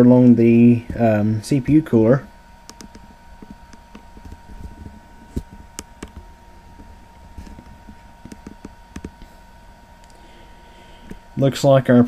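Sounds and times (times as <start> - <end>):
faint high hum: 0.0 - 12.0
soft handling clicks and knocks: 2.7 - 9.3.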